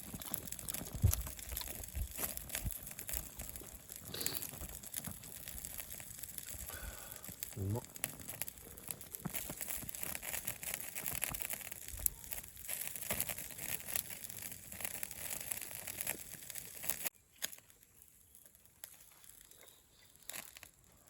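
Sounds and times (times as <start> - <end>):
wrapper crinkling and rustling: 8.0 - 21.0.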